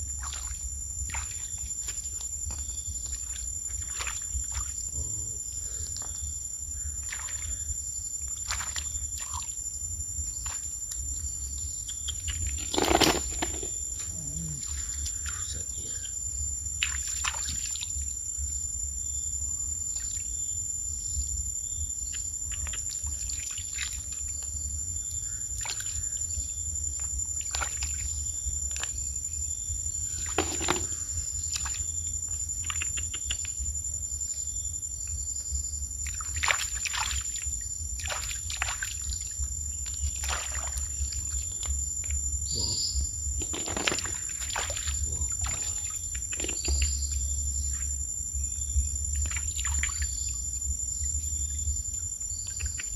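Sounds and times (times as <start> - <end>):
shallow water splashing: 12.3 - 14.0, 30.2 - 31.8, 39.9 - 41.7, 43.4 - 47.1
knocks: 30.4 - 31.0
steady low rumble: 46.9 - 52.4.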